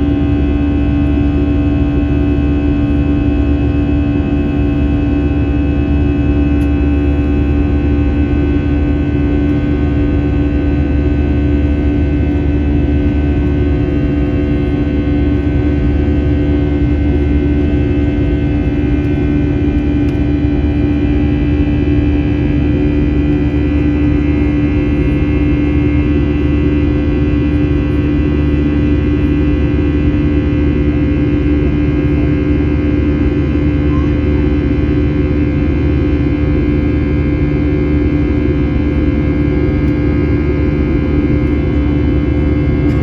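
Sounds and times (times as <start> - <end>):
jet engines droning in cabin: 0.0 - 43.0.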